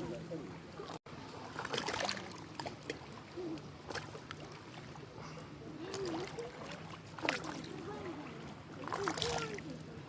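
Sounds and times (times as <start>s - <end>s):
small waves lapping and splashing: 0.0s - 10.0s
faint voices: 5.0s - 10.0s.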